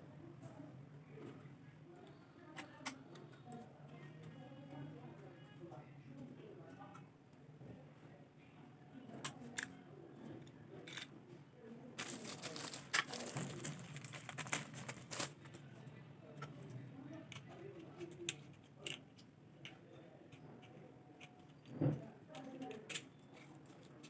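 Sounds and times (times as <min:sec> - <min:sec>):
packaging clicks and knocks: 0:12.0 - 0:15.6
plastic and paper crinkling: 0:12.0 - 0:15.6.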